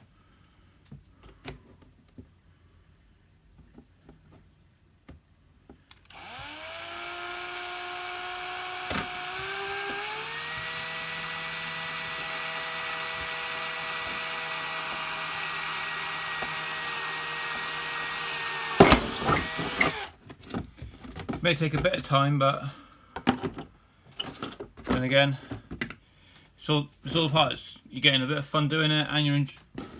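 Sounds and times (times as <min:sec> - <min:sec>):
electric drill whining: 0:05.9 - 0:20.2.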